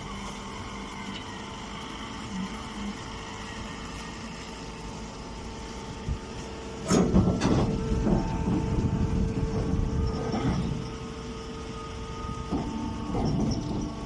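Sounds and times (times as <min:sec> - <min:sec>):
straw baler humming: 0:00.0 - 0:14.0
machine rattling and clattering: 0:12.5 - 0:14.0.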